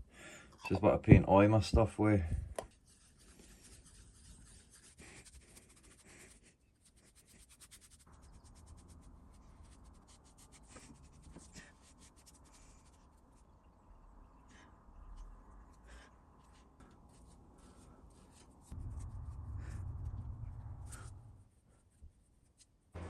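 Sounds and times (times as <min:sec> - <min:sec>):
paintbrush strokes on metal: 0:02.7 - 0:13.5.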